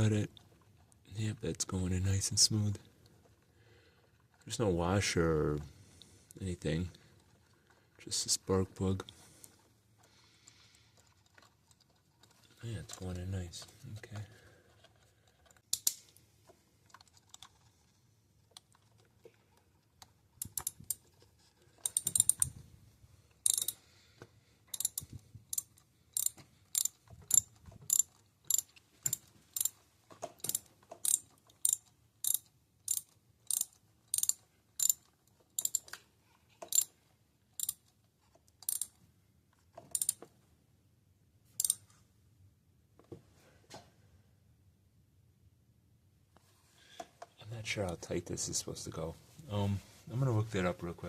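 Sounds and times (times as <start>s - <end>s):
ratchet wrench clicking: 20.4s - 21.0s, 21.8s - 22.5s, 23.4s - 23.8s, 24.7s - 29.8s, 30.4s - 36.0s, 36.6s - 36.9s, 37.6s - 37.8s, 38.6s - 39.0s, 39.9s - 40.2s, 41.6s - 41.8s.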